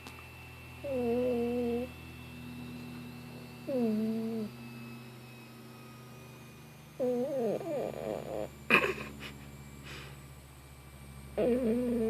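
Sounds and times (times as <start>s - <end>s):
cat mewing in its sleep: 0.8s - 1.9s, 3.7s - 4.5s, 7.0s - 8.5s, 11.4s - 12.0s.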